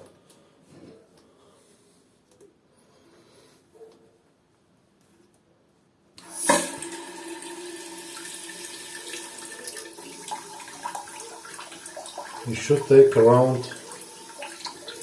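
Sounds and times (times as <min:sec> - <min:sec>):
water rushing into toilet cistern: 0:06.2 - 0:15.0.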